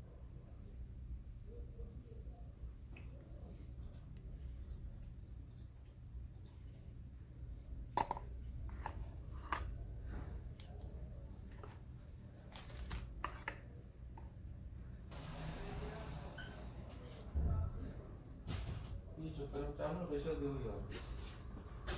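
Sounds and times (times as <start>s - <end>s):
low steady hum: 0.0s - 21.9s
packaging clicks and rustles: 12.4s - 13.6s.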